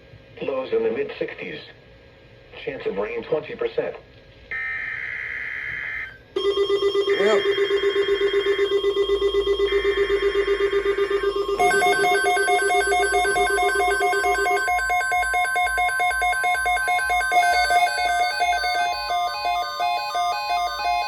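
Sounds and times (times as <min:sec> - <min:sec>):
buzzy pulsing beeps: 0:05.9 - 0:21.0
thin steady high tone: 0:06.4 - 0:21.0
electronic warble: 0:07.4 - 0:21.0.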